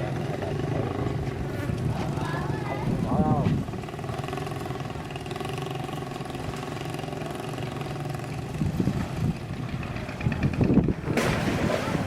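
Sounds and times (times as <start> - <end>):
engine idling: 0.0 - 11.3.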